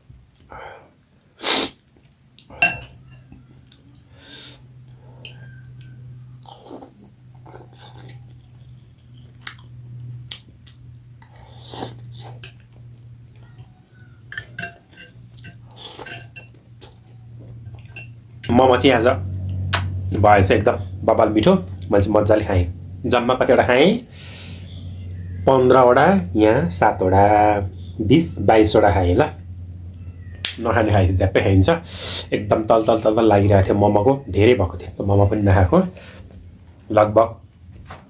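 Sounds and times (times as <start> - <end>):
low steady hum: 0.0 - 38.0
chewing and mouth noises: 1.8 - 18.5
sharp loud eating sounds: 3.4 - 17.8, 19.2 - 20.2.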